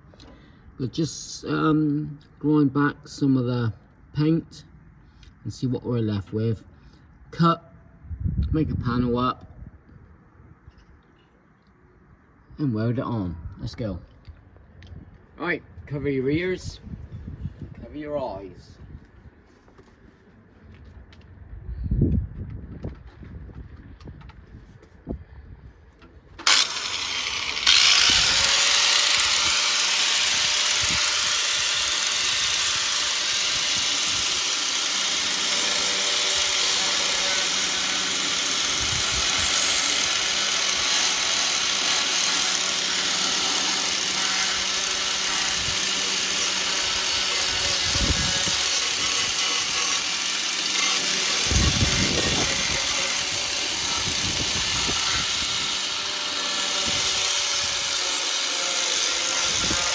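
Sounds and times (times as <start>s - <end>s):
angle grinder grinding metal: 26.4s - 59.9s.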